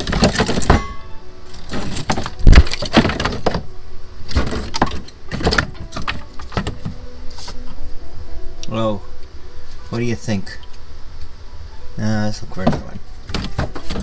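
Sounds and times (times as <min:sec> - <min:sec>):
background music: 0:00.0 - 0:14.0.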